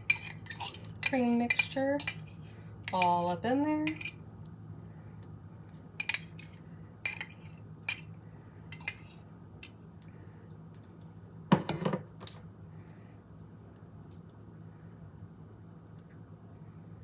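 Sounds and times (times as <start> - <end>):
utensil clinking against bowl: 0.0 - 2.3, 2.9 - 4.2, 6.0 - 8.1, 8.7 - 9.8.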